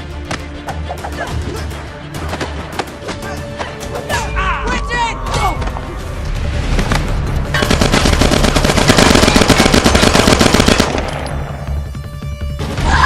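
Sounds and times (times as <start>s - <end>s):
film score music: 0.0s - 13.0s
automatic gunfire: 7.6s - 11.4s.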